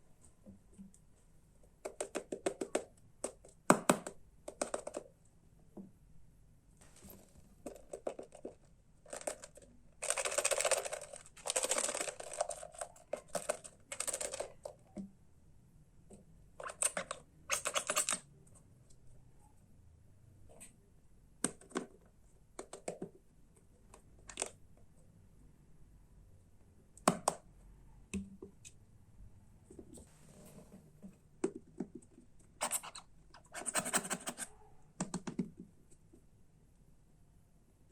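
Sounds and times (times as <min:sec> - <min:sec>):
rustling and scraping: 0:06.8 - 0:14.0, 0:32.6 - 0:34.6
toy truck parts clicking: 0:09.1 - 0:14.7.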